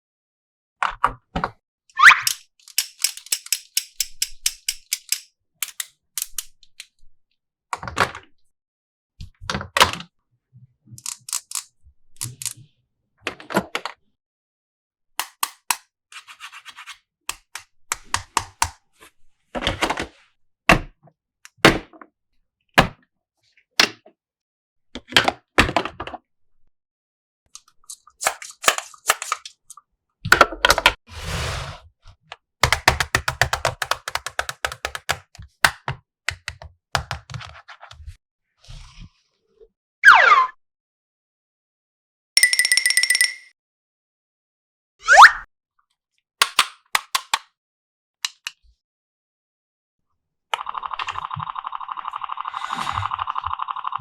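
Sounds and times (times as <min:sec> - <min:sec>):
plastic toy pieces clicking: 0:02.0 - 0:06.6, 0:11.0 - 0:12.6, 0:32.6 - 0:35.3, 0:46.4 - 0:47.5.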